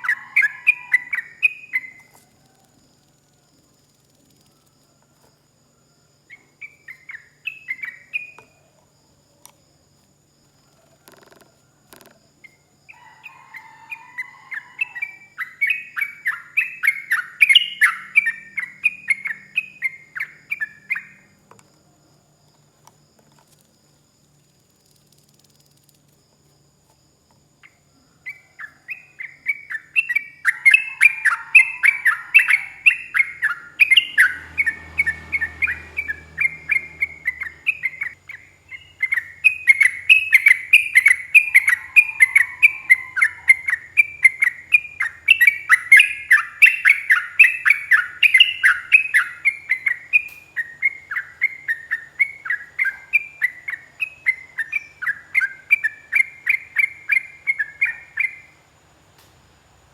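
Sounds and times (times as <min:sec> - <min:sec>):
bird singing sharp chirps: 0:14.9 - 0:21.2, 0:28.7 - 0:58.4.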